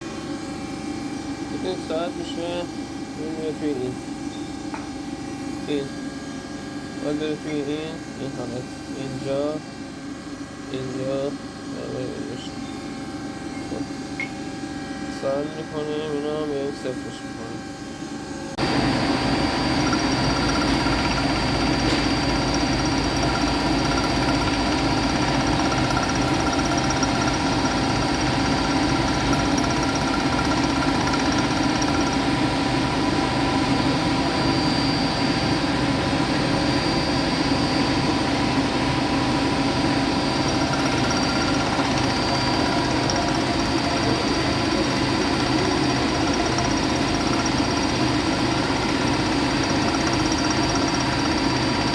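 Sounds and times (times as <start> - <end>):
thin high whine: 10.6 - 51.9
machine tool motor hum: 18.6 - 51.9.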